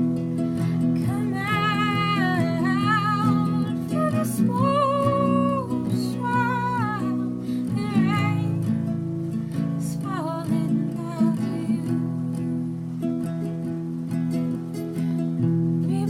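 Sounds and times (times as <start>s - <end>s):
acoustic guitar chords: 0.0s - 16.0s
person singing wordlessly: 1.0s - 8.7s, 9.8s - 12.1s.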